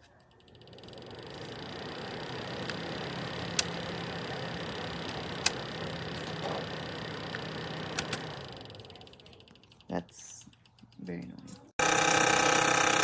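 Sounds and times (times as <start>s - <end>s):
space heater fan running: 0.0s - 13.0s
sharp clicks: 2.5s - 11.6s.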